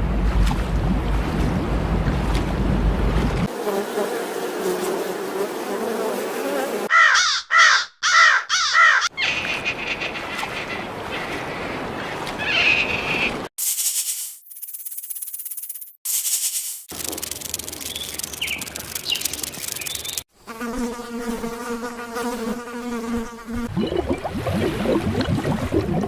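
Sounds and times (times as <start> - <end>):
insect-like buzzing: 3.5 - 6.9, 13.6 - 23.7
harsh crow-like calls: 6.9 - 11.4.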